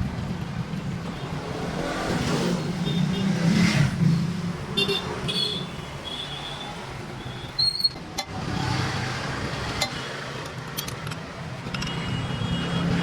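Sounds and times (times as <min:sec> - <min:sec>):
low hum of road traffic: 0:00.0 - 0:13.0.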